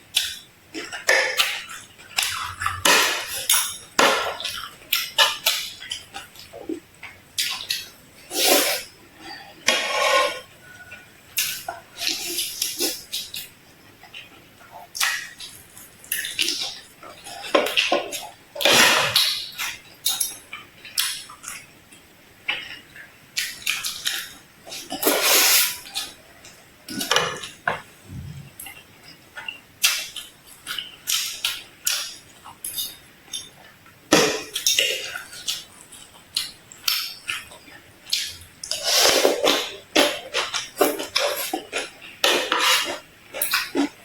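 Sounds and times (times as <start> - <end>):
dishes and utensils clinking: 0.8 - 5.6, 20.0 - 20.6.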